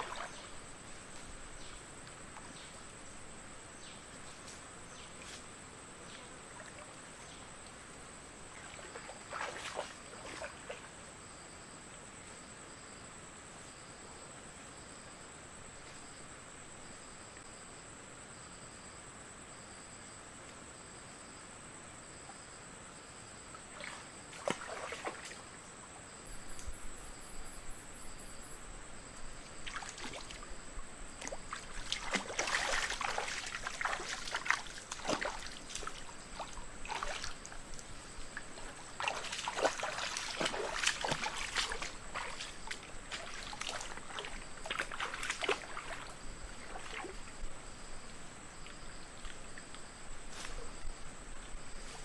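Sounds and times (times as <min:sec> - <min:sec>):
water splashing and trickling: 0:00.0 - 0:01.2, 0:08.4 - 0:10.9, 0:23.7 - 0:25.6, 0:29.4 - 0:50.0
cricket chirping: 0:00.0 - 0:52.0
high insect drone: 0:00.0 - 0:52.0.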